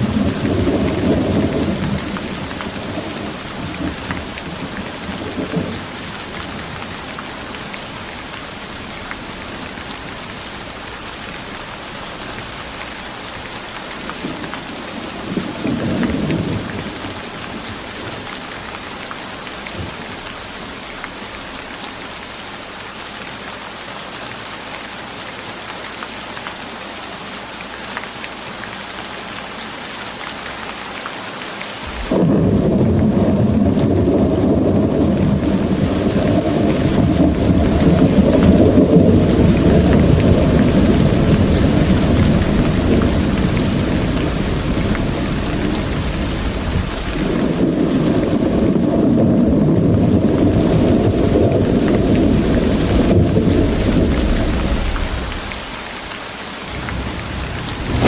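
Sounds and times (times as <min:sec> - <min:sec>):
thunder rumbling: 0:00.0 - 0:10.4, 0:13.9 - 0:19.0, 0:31.8 - 0:58.0
steady rain falling: 0:00.0 - 0:58.0.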